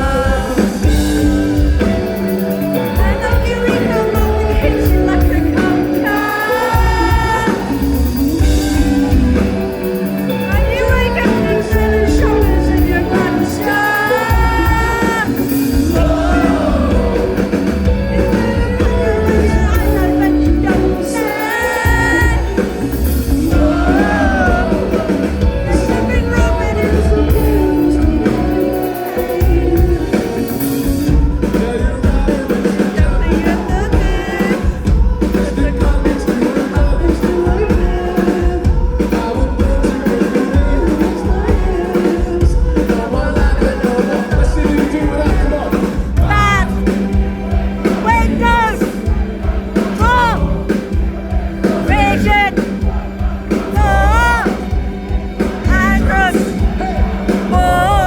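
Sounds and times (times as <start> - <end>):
person singing: 0.0 - 54.8, 55.4 - 58.0
rock band playing live: 0.0 - 58.0.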